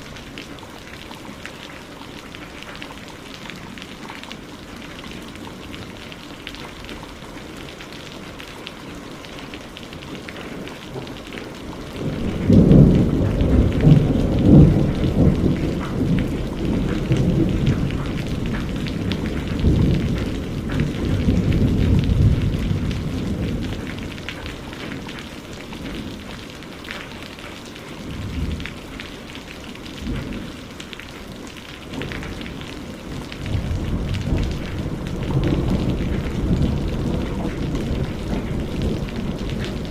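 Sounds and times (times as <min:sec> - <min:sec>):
steady rain: 0:00.0 - 0:39.9
thunder rumbling: 0:11.7 - 0:25.0, 0:32.0 - 0:39.9.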